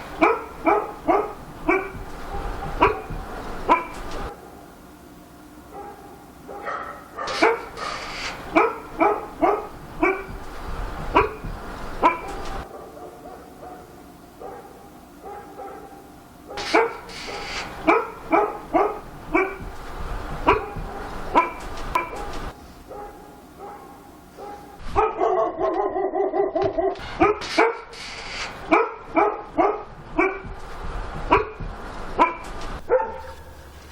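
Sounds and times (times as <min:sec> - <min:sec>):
dog barking: 0:00.0 - 0:04.8, 0:05.7 - 0:30.6, 0:31.2 - 0:33.8.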